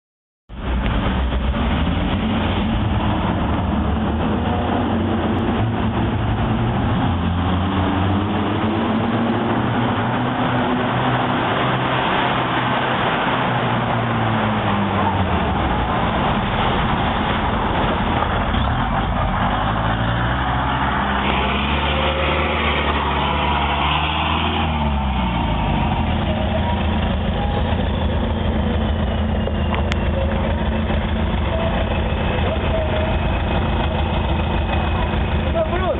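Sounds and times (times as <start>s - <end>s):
bus diesel engine labouring: 0.5s - 35.9s.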